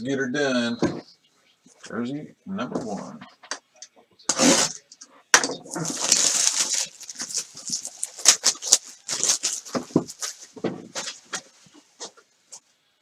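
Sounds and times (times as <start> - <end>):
plastic wrap crinkling: 5.6 - 12.1
packaging rustling and scraping: 5.6 - 12.2
sharp crackles: 5.7 - 11.8.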